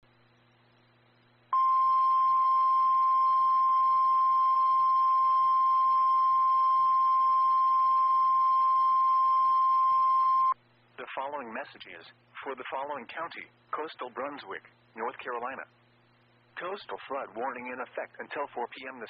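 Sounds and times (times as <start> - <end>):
faint hum: 0.0 - 19.0
loud steady high alarm tone: 1.6 - 10.6.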